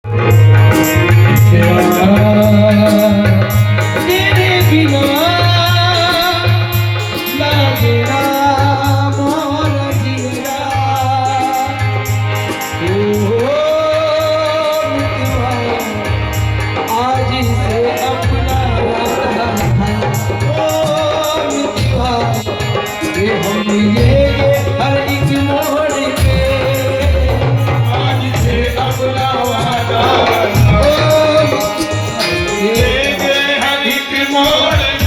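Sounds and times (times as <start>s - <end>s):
rattling percussion: 0.1s - 35.0s
music with low beat: 16.3s - 35.0s.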